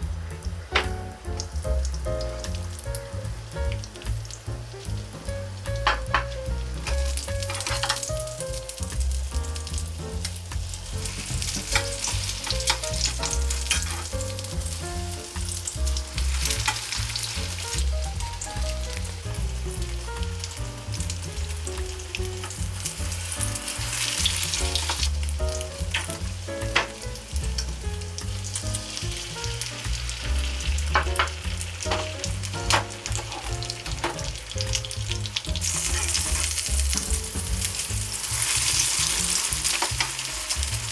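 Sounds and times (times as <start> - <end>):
egg sizzling in a pan: 0.0 - 40.9
utensil scraping a pan: 5.8 - 18.4, 28.6 - 40.9.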